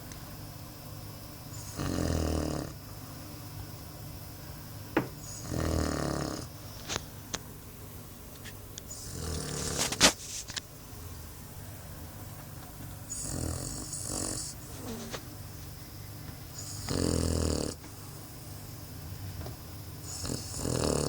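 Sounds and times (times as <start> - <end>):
pet snoring: 1.5 - 2.8, 5.2 - 6.6, 8.9 - 10.2, 13.1 - 15.2, 16.6 - 17.8, 20.0 - 21.0.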